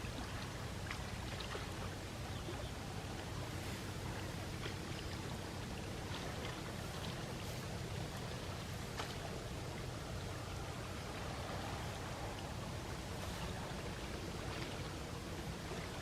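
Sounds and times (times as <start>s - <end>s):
small waves washing ashore: 0.0s - 16.0s.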